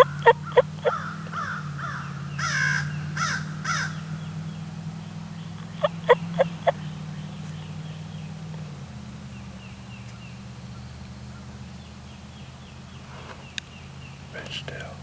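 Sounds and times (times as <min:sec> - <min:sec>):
crows cawing: 0:00.0 - 0:04.2, 0:05.6 - 0:06.8.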